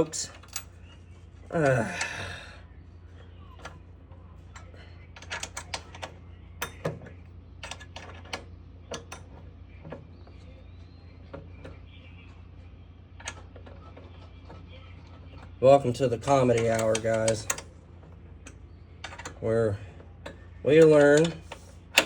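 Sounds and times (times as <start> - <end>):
low steady hum: 0.0 - 22.0
hand tools clicking on bolt: 16.2 - 17.7, 20.7 - 22.0.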